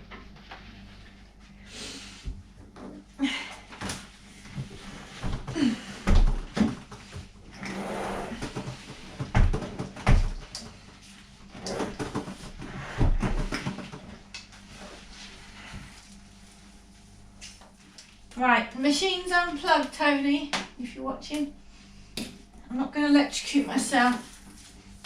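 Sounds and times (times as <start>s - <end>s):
knocks and scraping on washing machine: 4.6s - 14.2s.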